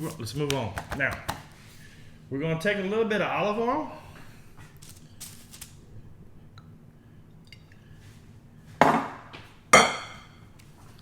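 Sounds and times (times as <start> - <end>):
glass bottle clink: 9.8 - 10.4.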